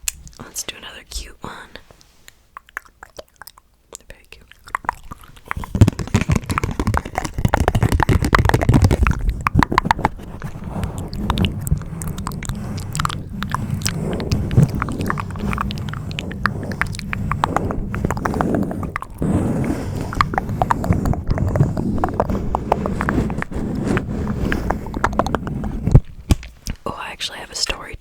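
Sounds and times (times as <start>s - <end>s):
wet mouth clicks and smacks: 2.2s - 10.1s.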